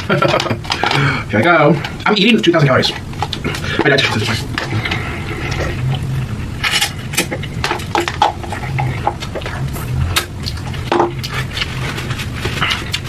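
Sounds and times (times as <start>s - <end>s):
utensils clinking: 0.0s - 13.0s
wet chewing: 2.7s - 13.0s.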